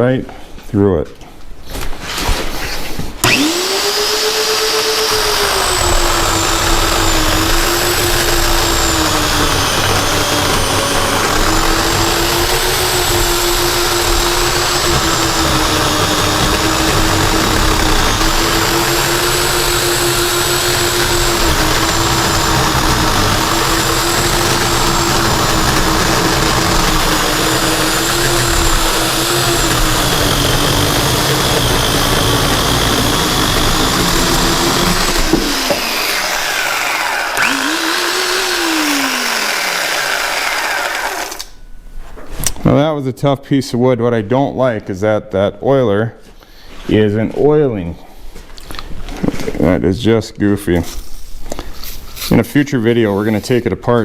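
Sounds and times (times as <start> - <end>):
electric chainsaw cutting log: 3.2 - 41.6.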